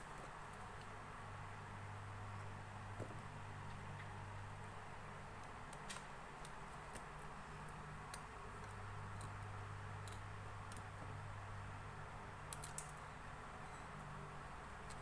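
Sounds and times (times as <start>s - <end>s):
steady low hum: 0.0s - 15.0s
small tools clicking and tapping: 7.7s - 11.0s, 12.5s - 13.1s.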